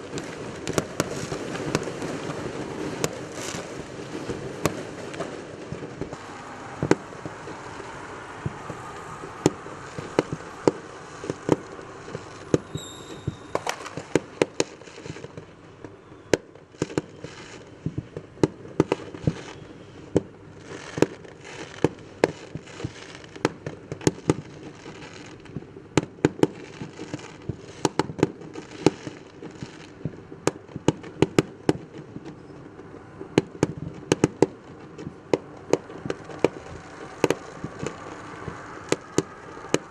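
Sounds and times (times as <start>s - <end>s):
fireworks bangs and pops: 0.0s - 39.9s
rumble of distant fireworks: 0.0s - 39.9s
short high tone: 12.6s - 13.8s.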